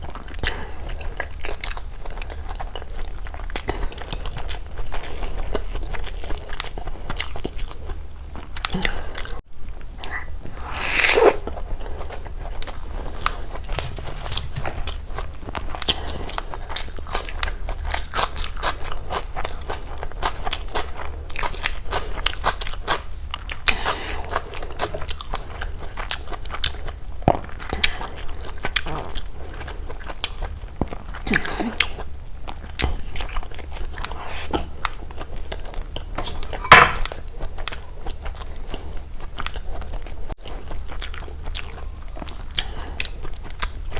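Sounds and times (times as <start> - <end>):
crunchy chewing: 10.4 - 32.1.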